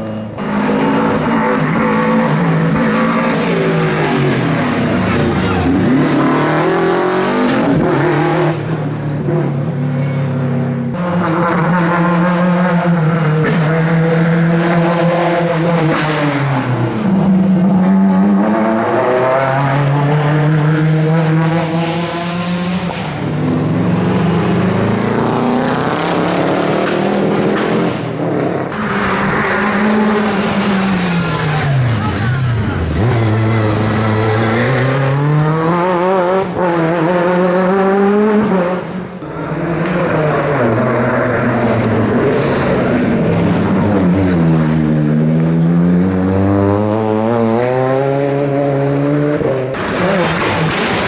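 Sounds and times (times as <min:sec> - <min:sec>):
rally car engines revving: 0:00.0 - 0:51.0.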